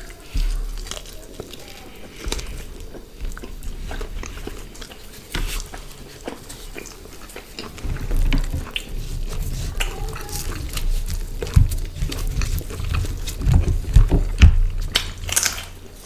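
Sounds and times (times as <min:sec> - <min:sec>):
chewing and biting: 0:00.0 - 0:16.0
low thuds: 0:07.7 - 0:16.0.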